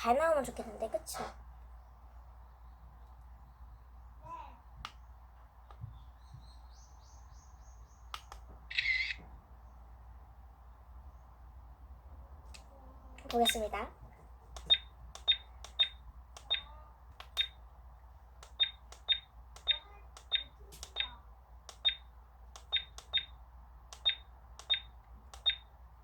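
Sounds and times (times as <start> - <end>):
camera beeping: 8.2 - 9.2, 14.6 - 17.6, 18.4 - 25.7.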